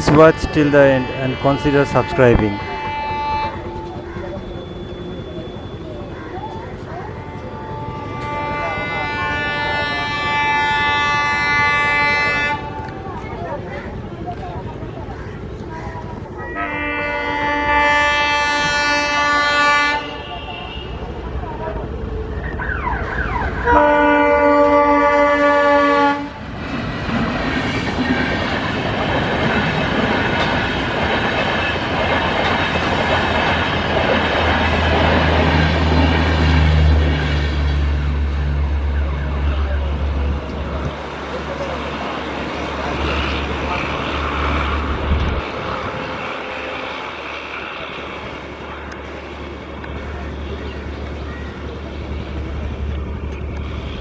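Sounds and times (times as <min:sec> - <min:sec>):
locomotive horn blast: 0:00.0 - 0:04.0, 0:07.2 - 0:12.9, 0:16.5 - 0:21.1, 0:23.6 - 0:26.4
train passing at high speed: 0:00.0 - 0:54.0.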